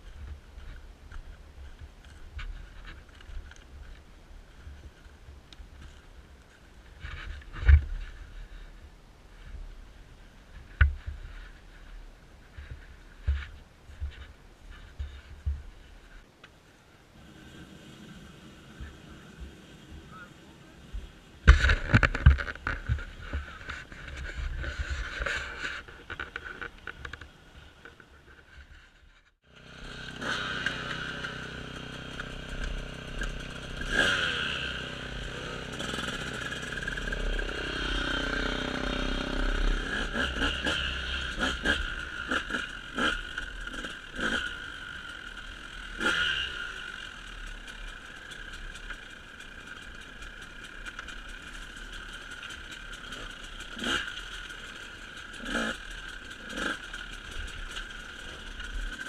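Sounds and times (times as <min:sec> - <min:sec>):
sharp knocks and clatter: 0:21.5 - 0:28.6
engine running: 0:29.4 - 0:59.0.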